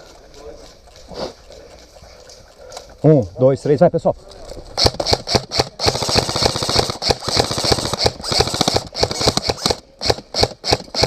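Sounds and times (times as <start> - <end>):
airsoft guns firing: 4.8 - 11.0.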